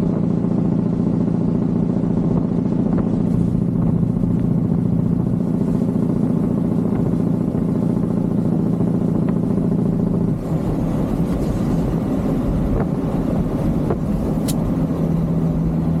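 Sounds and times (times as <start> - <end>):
truck diesel engine droning: 0.0 - 16.0
sharp click: 14.4 - 14.7.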